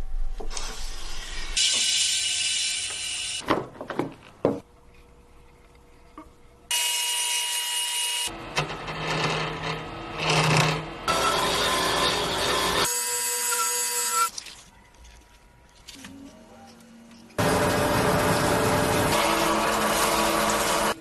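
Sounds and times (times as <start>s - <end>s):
power tool running: 6.7s - 13.8s, 17.4s - 21.0s.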